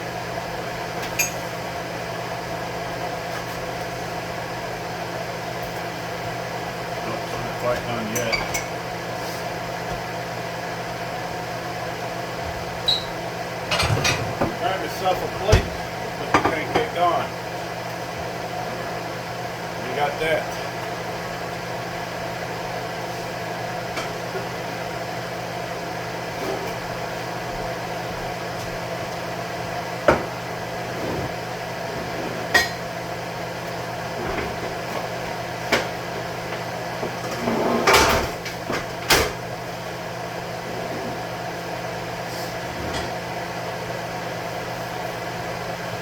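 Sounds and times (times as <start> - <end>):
range hood fan humming: 0.0 - 46.0
dishes and cupboards clattering: 13.7 - 14.6.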